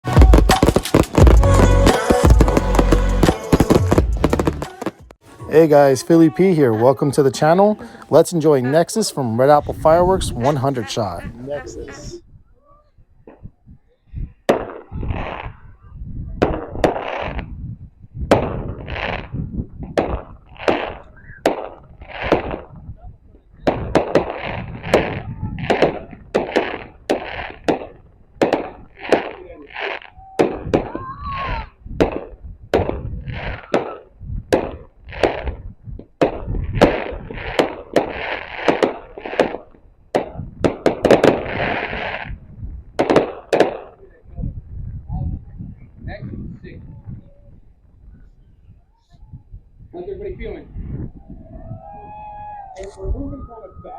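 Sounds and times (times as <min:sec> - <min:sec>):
firework bangs: 0:00.0 - 0:05.2, 0:14.5 - 0:15.7, 0:16.4 - 0:17.7, 0:18.3 - 0:22.9, 0:23.6 - 0:44.2.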